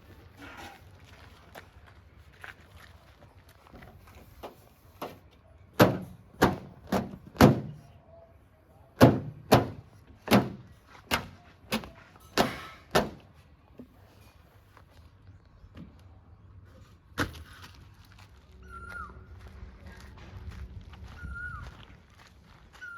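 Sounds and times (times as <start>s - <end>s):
sharp knocks: 5.8s - 7.8s, 9.0s - 11.8s, 12.4s - 13.2s.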